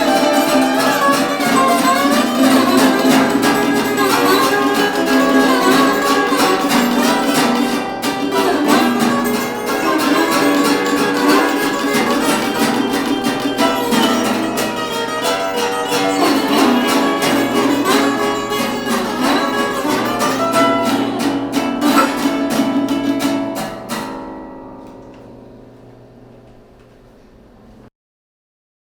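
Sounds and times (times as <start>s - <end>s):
acoustic guitar strumming: 0.0s - 27.6s.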